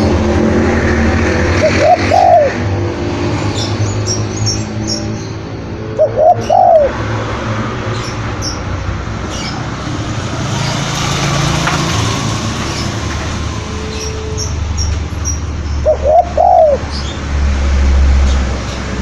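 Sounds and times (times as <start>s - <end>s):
road traffic rumble: 0.0s - 19.0s
dove cooing: 1.6s - 2.7s, 5.6s - 7.6s, 15.8s - 17.0s
small birds chirping: 7.9s - 11.1s.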